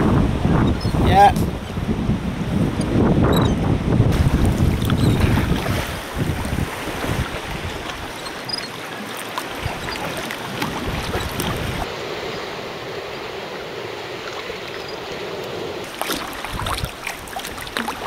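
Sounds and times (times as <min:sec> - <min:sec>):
water sloshing around a kayak: 0:04.1 - 0:18.0
small splashes and drips: 0:15.9 - 0:18.0.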